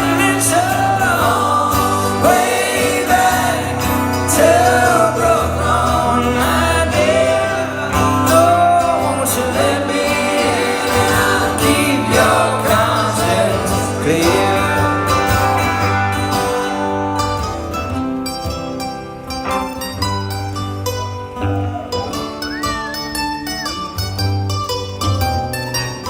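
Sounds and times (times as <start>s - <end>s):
person singing: 0.0s - 16.8s
strummed guitar: 0.0s - 26.0s.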